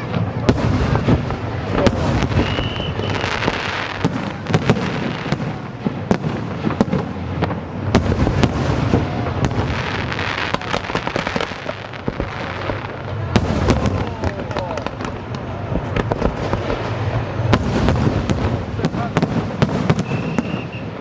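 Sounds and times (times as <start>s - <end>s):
fireworks banging: 0.0s - 21.0s
fireworks crackling: 0.0s - 21.0s
firework whistle: 2.0s - 4.0s, 19.6s - 21.0s.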